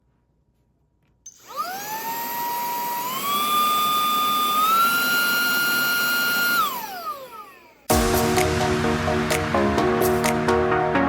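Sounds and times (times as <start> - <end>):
handheld vacuum motor whining: 1.3 - 7.9.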